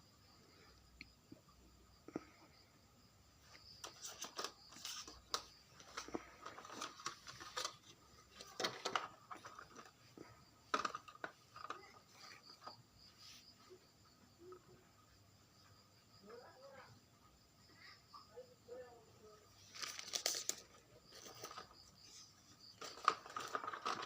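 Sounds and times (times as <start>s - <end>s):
packaging rustling and crinkling: 3.8s - 9.9s, 19.6s - 21.8s, 22.7s - 24.0s.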